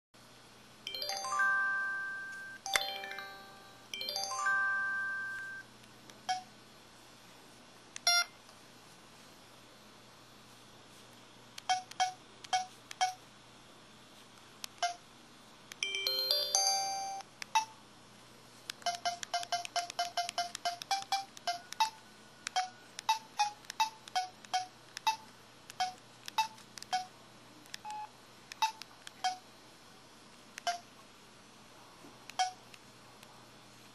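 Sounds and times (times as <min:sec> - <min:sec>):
keypad button beeps: 0:06.3 - 0:06.5, 0:08.1 - 0:08.3, 0:11.6 - 0:13.2, 0:14.8 - 0:15.0, 0:15.8 - 0:17.8, 0:18.8 - 0:25.2, 0:27.8 - 0:29.4, 0:30.6 - 0:30.8, 0:32.3 - 0:32.6.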